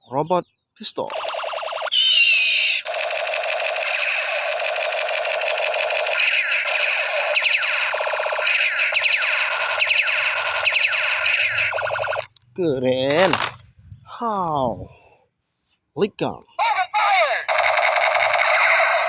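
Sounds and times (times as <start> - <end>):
warbling electronic beeps: 1.1 - 12.3
falling laser-zap sweeps: 3.7 - 12.2.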